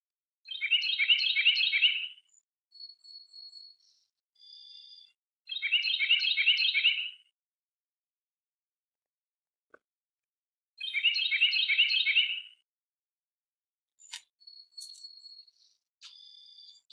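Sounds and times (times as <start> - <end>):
songbird trilling: 0.5 - 2.1, 5.5 - 7.1, 10.8 - 12.4.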